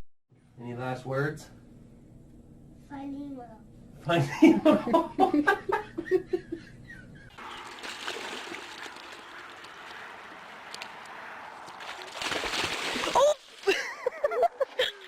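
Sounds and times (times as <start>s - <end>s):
rushing water: 7.4s - 13.8s.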